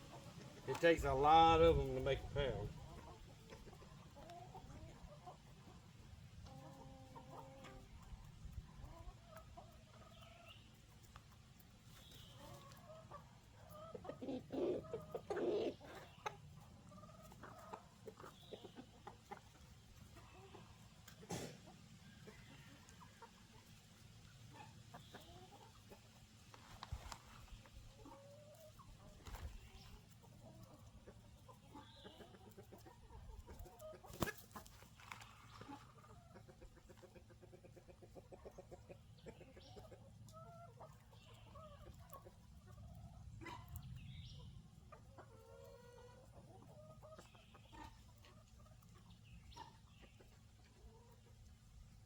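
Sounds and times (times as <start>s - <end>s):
chickens clucking: 0.0s - 52.0s.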